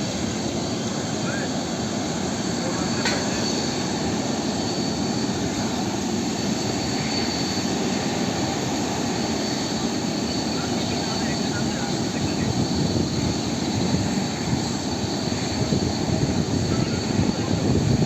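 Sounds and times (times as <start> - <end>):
jet engines running: 0.0 - 18.0.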